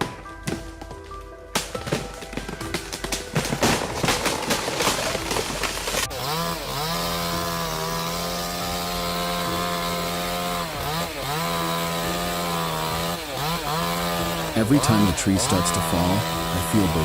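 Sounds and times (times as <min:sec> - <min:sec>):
chainsaw running at high revs: 0:03.9 - 0:17.0.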